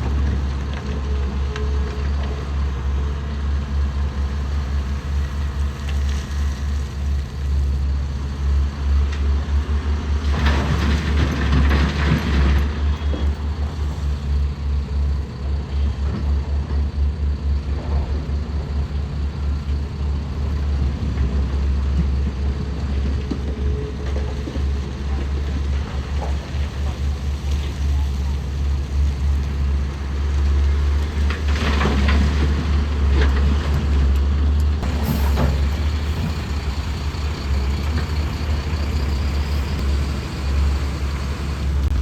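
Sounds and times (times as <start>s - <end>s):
diesel machinery droning: 0.0s - 42.0s
rattling rush: 34.8s - 42.0s.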